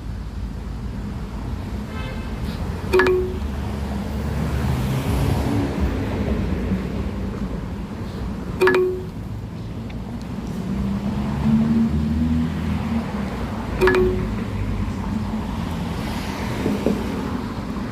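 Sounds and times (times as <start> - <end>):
short chime-like tone: 3.0 - 3.5, 8.6 - 9.2, 13.8 - 14.4.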